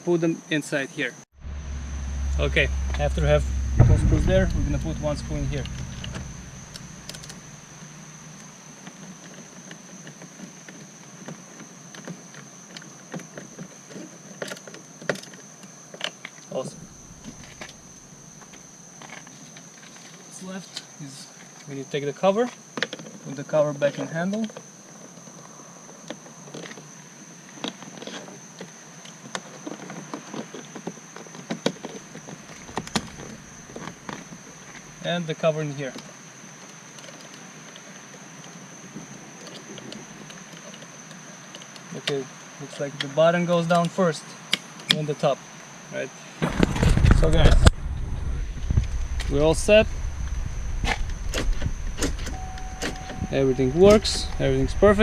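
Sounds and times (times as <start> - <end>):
faint high-pitched whine: 1.0 - 8.6, 47.1 - 55.0.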